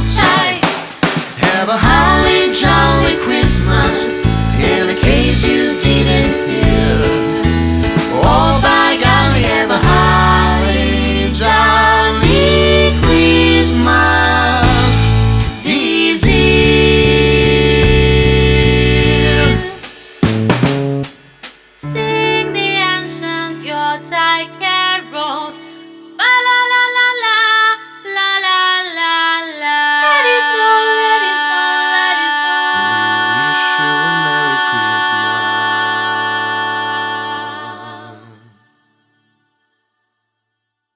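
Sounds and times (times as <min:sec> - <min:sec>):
person singing: 0:00.0 - 0:00.8, 0:01.4 - 0:19.9, 0:21.8 - 0:38.7
drum hits: 0:00.0 - 0:05.6, 0:06.6 - 0:10.4, 0:12.2 - 0:21.8
soul band playing: 0:00.0 - 0:24.8, 0:30.0 - 0:30.8.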